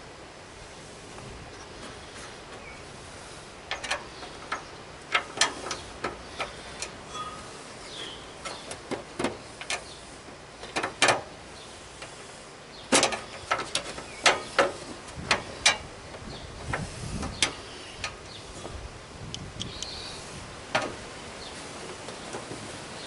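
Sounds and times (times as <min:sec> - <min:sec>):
sharp clicks and knocks: 0:03.7 - 0:07.4, 0:08.0 - 0:11.3, 0:12.9 - 0:18.2, 0:20.7 - 0:21.0.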